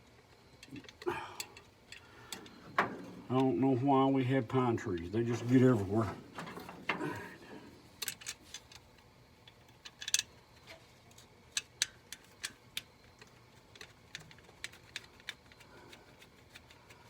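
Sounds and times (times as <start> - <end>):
tools and parts clicking: 8.0 - 17.0.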